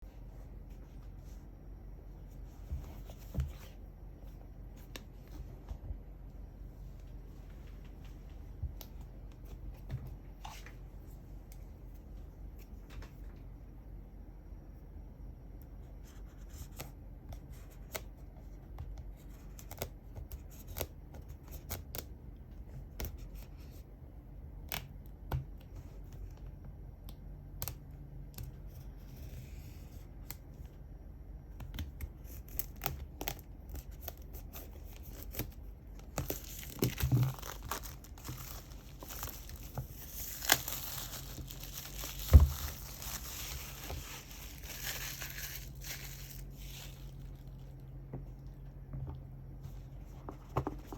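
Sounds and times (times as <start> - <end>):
plastic wrap tearing and crinkling: 32.3 - 47.8.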